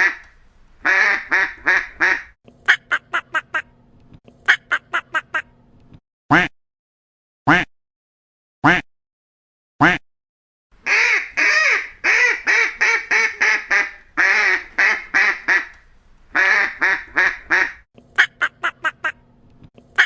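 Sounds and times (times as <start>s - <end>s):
duck quacking: 0.0s - 2.3s, 10.8s - 17.8s.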